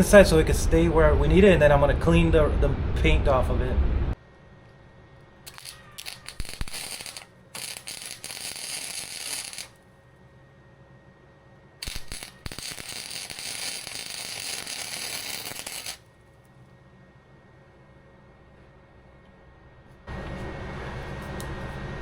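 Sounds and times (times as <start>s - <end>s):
arc welder crackling sizzle: 5.4s - 9.9s, 11.8s - 16.6s.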